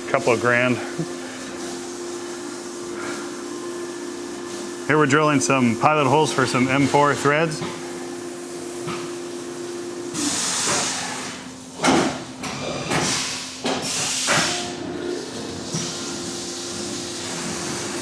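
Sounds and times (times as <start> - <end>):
machine hum: 0.0 - 10.2
coolant spray hissing: 0.0 - 11.5.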